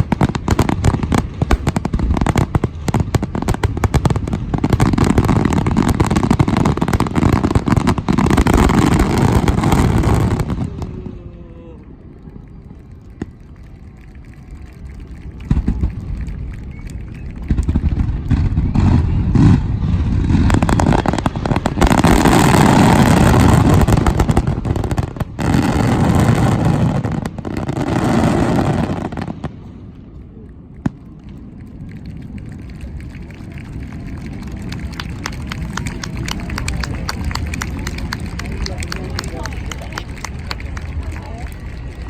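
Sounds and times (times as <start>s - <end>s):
fireworks booming: 0.0s - 11.1s, 17.4s - 29.8s
fireworks crackling: 0.0s - 11.2s, 11.8s - 42.0s.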